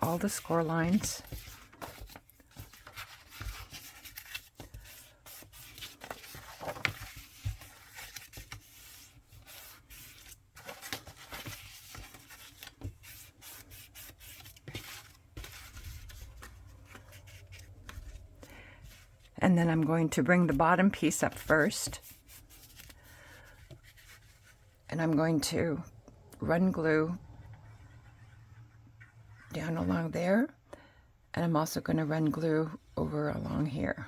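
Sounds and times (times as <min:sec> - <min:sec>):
paper rubbing and scraping: 0:00.0 - 0:19.2, 0:27.6 - 0:29.5.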